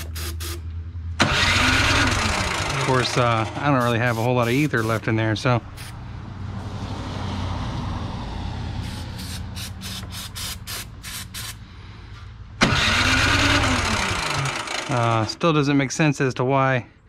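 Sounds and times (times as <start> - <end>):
aerosol can spraying and spitting: 0.0 - 0.6, 3.8 - 5.1, 5.8 - 6.0, 8.8 - 11.6
loud noisy sound: 1.2 - 3.8.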